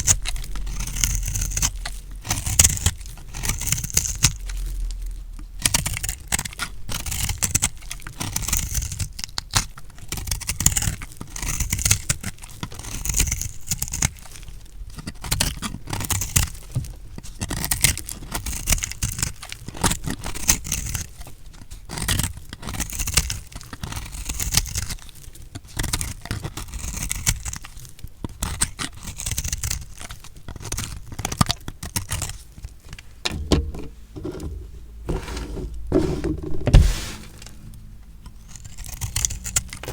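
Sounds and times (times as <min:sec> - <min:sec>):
knife cutting through soap: 0:33.2 - 0:37.5.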